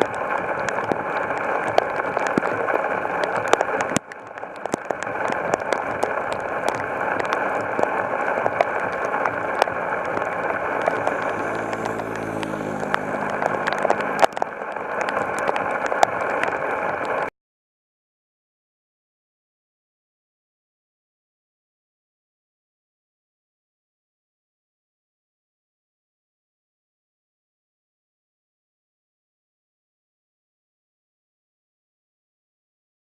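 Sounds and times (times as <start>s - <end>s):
heavy rain pouring: 0.0s - 17.3s
low droning hum: 6.0s - 17.2s.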